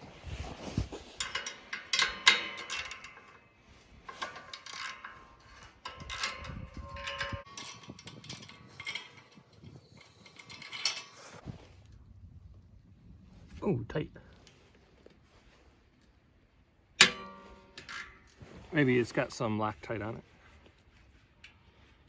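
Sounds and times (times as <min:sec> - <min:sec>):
hand tools clinking on metal: 0:01.0 - 0:11.4
ringing metal knocks: 0:01.2 - 0:11.4, 0:17.0 - 0:18.2.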